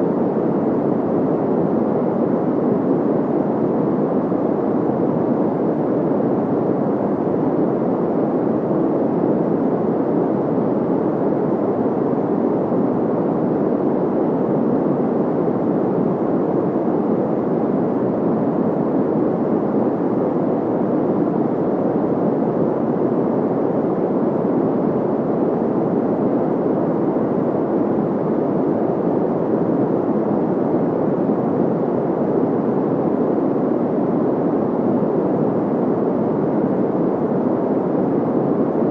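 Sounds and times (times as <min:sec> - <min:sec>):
dull white noise rush: 0:00.0 - 0:38.9.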